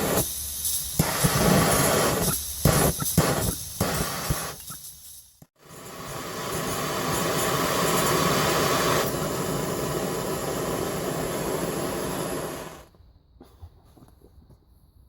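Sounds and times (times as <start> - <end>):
gas torch burner hissing: 0.0 - 4.8, 5.5 - 13.0.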